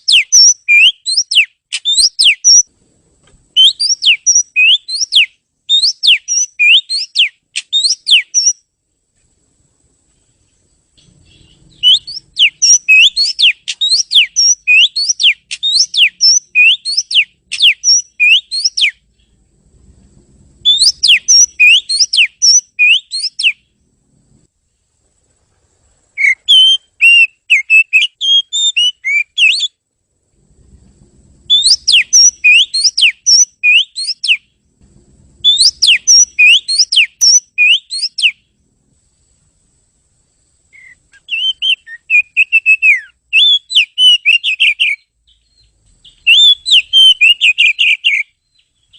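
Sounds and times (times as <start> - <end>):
bird singing whistled notes: 0.0 - 2.7, 3.5 - 8.7, 11.0 - 19.4, 20.6 - 23.7, 26.2 - 29.8, 31.5 - 34.6, 35.4 - 38.5, 40.7 - 48.9.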